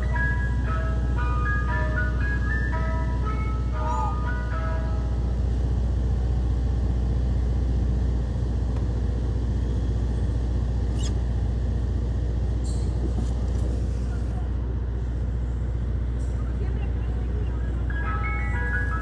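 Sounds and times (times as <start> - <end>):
truck engine rumbling: 0.0 - 19.0.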